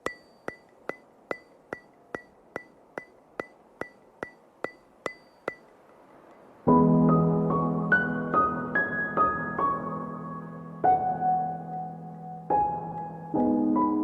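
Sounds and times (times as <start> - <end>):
sharp ringing ticks: 0.0 - 6.5
music with keyboard chords: 6.7 - 14.0.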